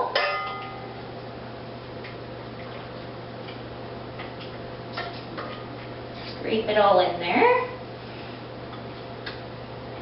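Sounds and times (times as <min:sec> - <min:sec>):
dish clinking against bowl: 0:00.0 - 0:00.9.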